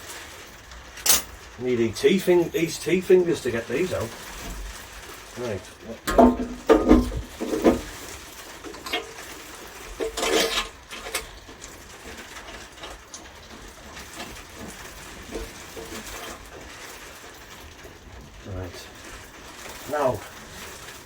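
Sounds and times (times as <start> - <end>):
heavy rain hiss: 0.0 - 21.0
metal tools clinking: 1.0 - 1.4.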